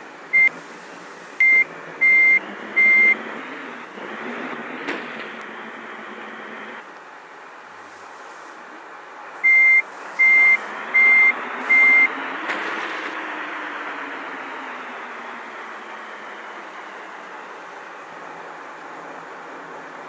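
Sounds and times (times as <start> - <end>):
engine and traffic hum: 0.0 - 20.0
reversing alarm beeping: 0.3 - 0.6, 1.4 - 3.9, 9.4 - 13.1.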